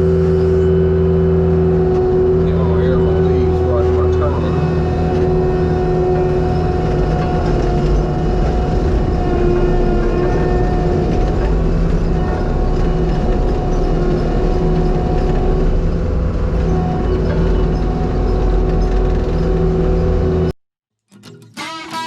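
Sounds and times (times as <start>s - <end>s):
skid steer engine running: 0.0s - 20.5s
steady whine: 0.0s - 20.5s.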